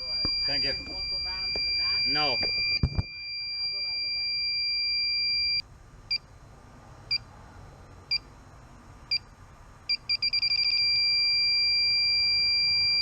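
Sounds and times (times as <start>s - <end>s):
continuous alarm tone: 0.0s - 6.2s, 9.9s - 13.0s
gas detector beeping: 0.0s - 6.2s, 9.9s - 13.0s.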